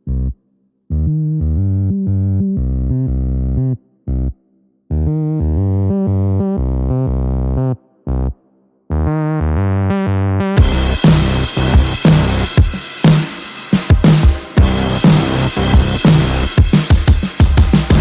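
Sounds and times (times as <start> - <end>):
synthesizer bass chords: 0.0 - 18.0
electronic drums: 10.6 - 18.0.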